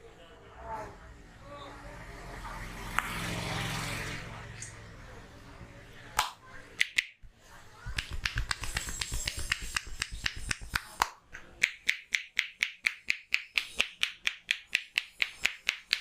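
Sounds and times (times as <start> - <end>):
hands rubbing: 7.8 - 16.0
hands tapping a head: 7.8 - 16.0
crisp hand claps: 7.9 - 16.0.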